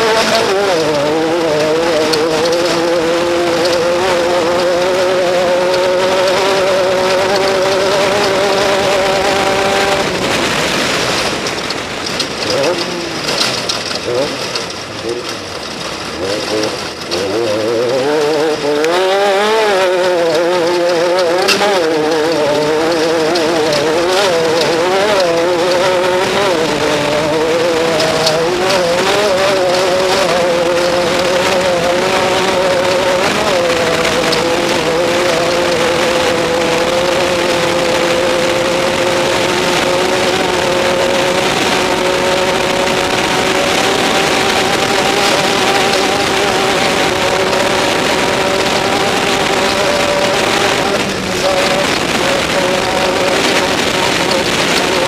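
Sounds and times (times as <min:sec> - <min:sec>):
engine at high revs: 0:00.0 - 0:55.0
rushing noise: 0:00.0 - 0:55.0
sharp ticks and rattles: 0:00.0 - 0:55.0.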